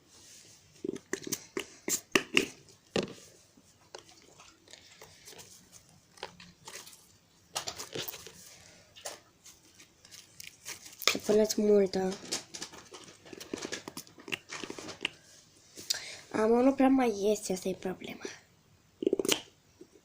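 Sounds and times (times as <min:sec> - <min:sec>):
slime squishing by hand: 0:00.8 - 0:08.4.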